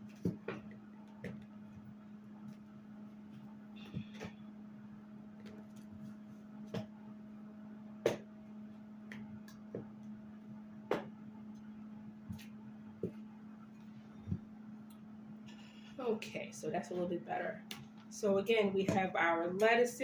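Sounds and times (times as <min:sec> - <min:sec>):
air fryer humming: 0:00.0 - 0:20.0.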